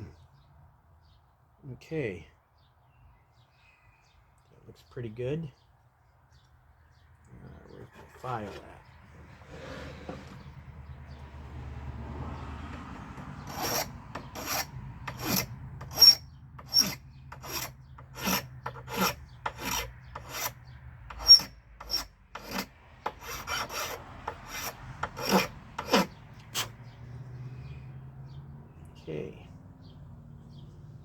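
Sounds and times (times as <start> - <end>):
hand file rasping: 7.9 - 10.6, 12.7 - 26.8.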